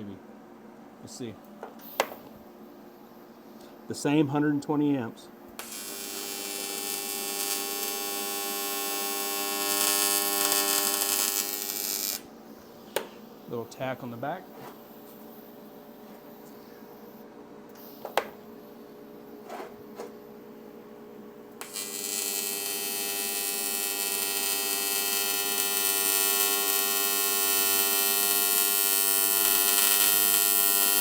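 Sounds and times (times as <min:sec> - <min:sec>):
welding arc buzzing: 0:05.6 - 0:12.4, 0:21.5 - 0:31.0.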